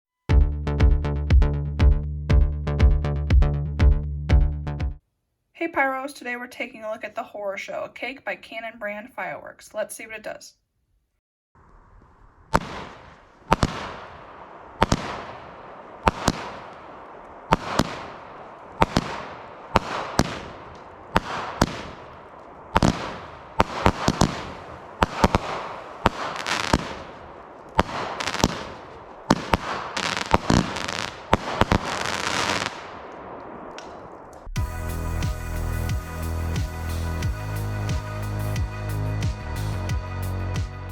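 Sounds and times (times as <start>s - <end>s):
firework shots banging and hissing: 12.0s - 34.5s.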